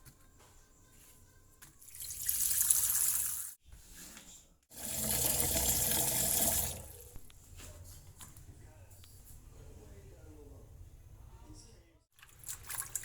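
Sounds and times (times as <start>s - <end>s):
water running: 1.8s - 3.6s, 4.7s - 7.3s, 12.2s - 13.0s.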